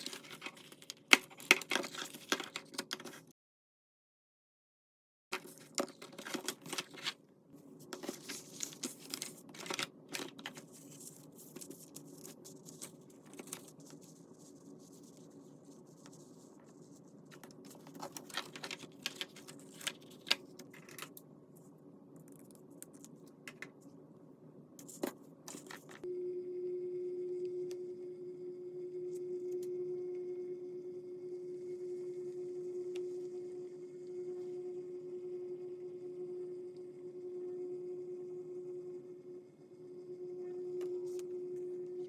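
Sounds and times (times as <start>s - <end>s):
paper rustling and tearing: 0.0s - 3.2s, 5.4s - 7.2s, 7.9s - 15.3s, 16.0s - 21.1s
steady electric hum: 5.4s - 42.0s.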